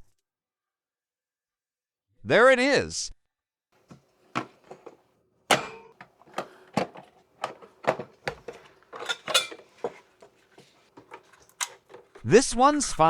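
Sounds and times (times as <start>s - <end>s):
hard plastic parts clicking: 3.9s - 12.3s.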